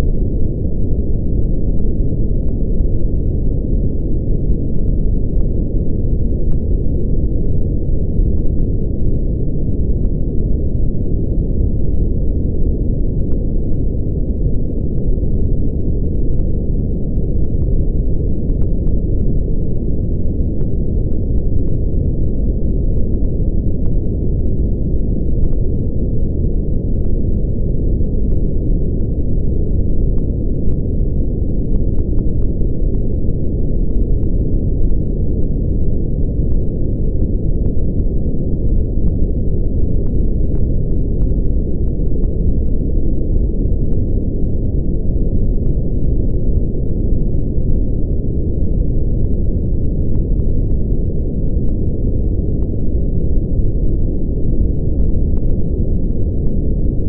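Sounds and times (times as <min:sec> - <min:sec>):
brown noise deep rumble: 0:00.0 - 0:57.0.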